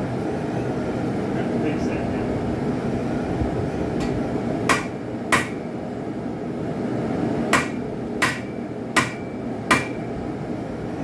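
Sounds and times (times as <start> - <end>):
hammer striking metal on anvil: 4.7 - 5.7, 7.5 - 10.1.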